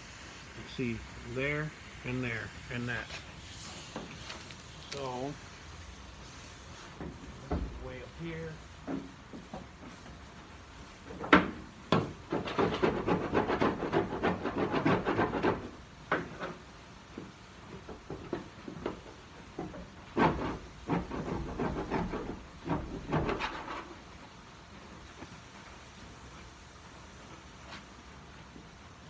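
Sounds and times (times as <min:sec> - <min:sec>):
tool scraping sheet metal: 0:12.0 - 0:16.6.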